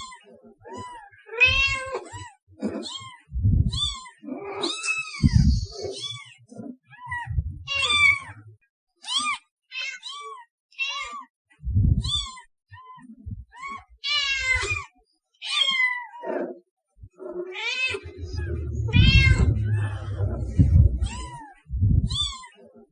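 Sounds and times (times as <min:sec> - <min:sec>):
cats meowing: 0:00.0 - 0:08.4, 0:09.0 - 0:11.3, 0:12.0 - 0:16.4, 0:17.2 - 0:22.6
dull low thumps: 0:03.3 - 0:03.9, 0:05.2 - 0:05.8, 0:07.3 - 0:07.8, 0:11.6 - 0:12.1, 0:13.2 - 0:13.5, 0:18.0 - 0:22.2.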